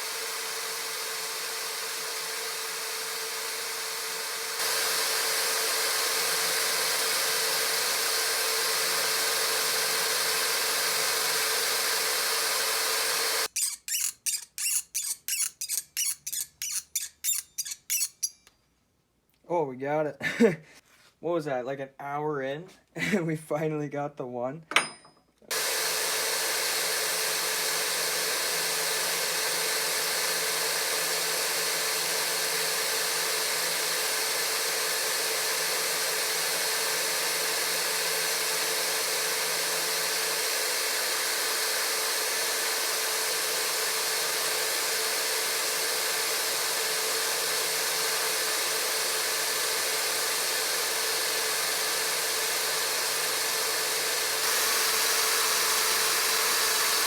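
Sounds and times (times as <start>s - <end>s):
small electric tool running: 0.0s - 18.3s, 25.5s - 57.0s.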